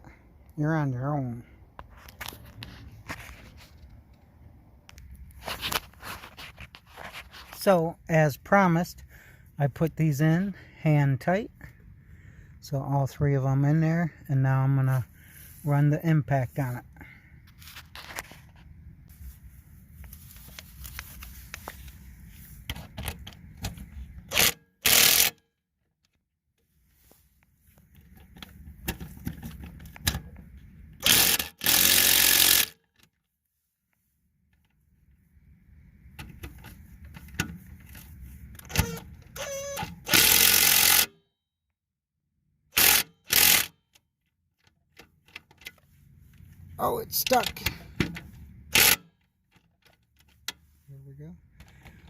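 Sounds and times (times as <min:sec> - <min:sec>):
tool-handling clicks and scrapes: 0:01.8 - 0:04.2, 0:05.2 - 0:07.8, 0:17.4 - 0:25.4, 0:27.0 - 0:32.8, 0:36.1 - 0:41.2, 0:44.6 - 0:50.9
cordless impact wrench bursts: 0:24.3 - 0:25.4, 0:31.0 - 0:32.8, 0:38.7 - 0:41.1, 0:42.7 - 0:43.7, 0:48.7 - 0:49.1.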